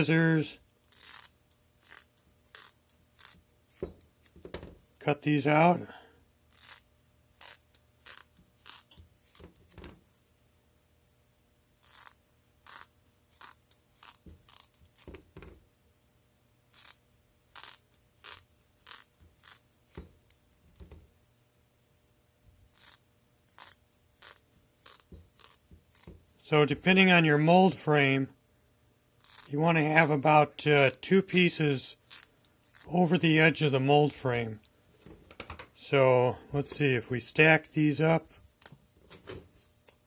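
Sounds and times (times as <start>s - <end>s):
scissors cutting rubber: 0.8s - 4.5s, 6.5s - 9.8s, 11.8s - 15.3s, 16.7s - 20.1s, 22.7s - 26.2s, 29.2s - 30.2s, 32.0s - 32.9s.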